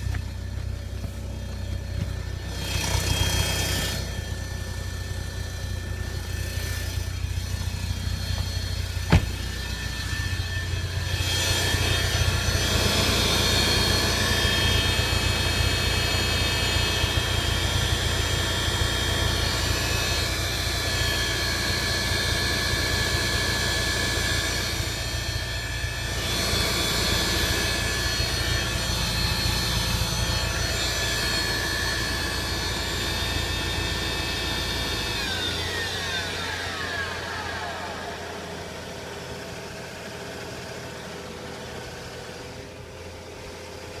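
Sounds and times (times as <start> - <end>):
deep engine rumble: 0.0 - 35.2
car engine whining: 0.0 - 44.0.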